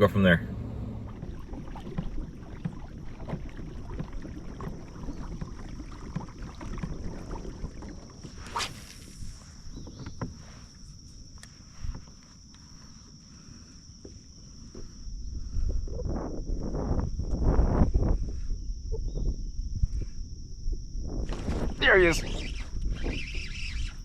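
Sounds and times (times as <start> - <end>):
water: 0.0 - 24.0
wind: 0.0 - 24.0
paddle knocking on hull: 1.0 - 8.3.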